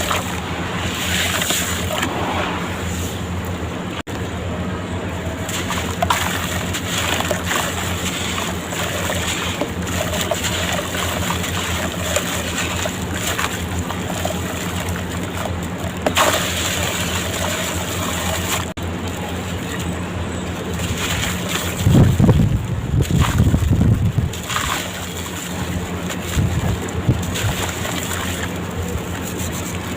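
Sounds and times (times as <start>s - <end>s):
water sloshing: 0.0s - 4.1s, 5.2s - 29.9s
low steady hum: 0.0s - 29.9s
blocks crumbling in water: 5.4s - 18.8s, 23.0s - 29.9s.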